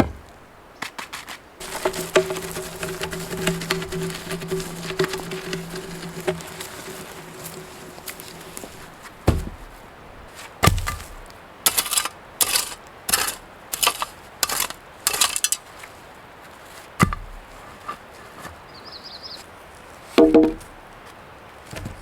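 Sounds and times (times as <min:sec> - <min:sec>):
short rasping strokes: 0:01.6 - 0:09.7
wood knocking on wood: 0:01.6 - 0:09.8, 0:17.0 - 0:17.4, 0:20.2 - 0:20.7.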